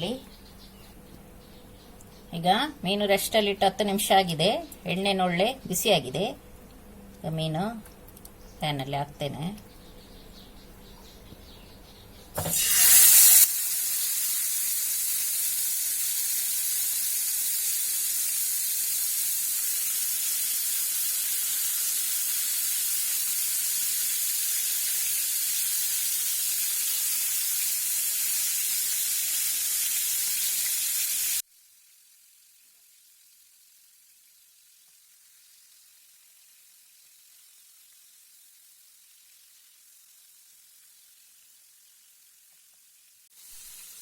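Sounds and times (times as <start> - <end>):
faint hiss: 12.4 - 44.0
fish sizzling in hot oil: 12.4 - 44.0.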